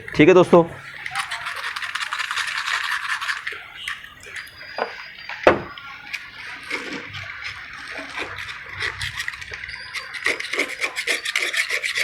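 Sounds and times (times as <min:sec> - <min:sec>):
blade scraping metal: 0:00.9 - 0:12.0
sharp knocks: 0:04.8 - 0:05.8.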